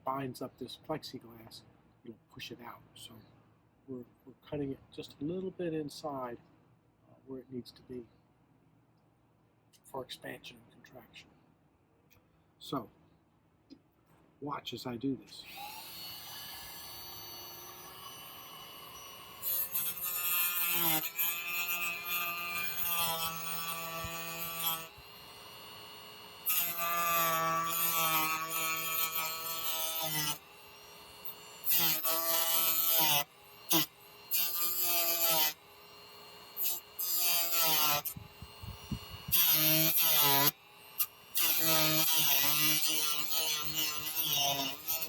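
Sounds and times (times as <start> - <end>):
rotary tool cutting plastic: 15.4 - 45.0
rotary tool whining: 15.4 - 45.0.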